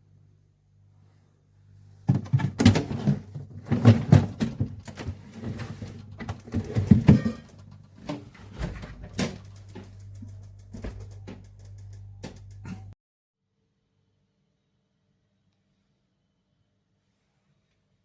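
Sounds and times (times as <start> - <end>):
steady low hum: 0.0 - 13.0
knocking and clattering: 2.1 - 12.7.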